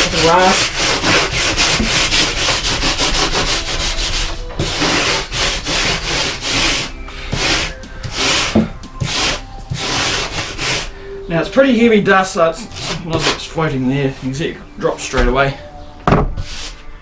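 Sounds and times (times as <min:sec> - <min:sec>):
rasp filing foam board: 0:00.0 - 0:10.2.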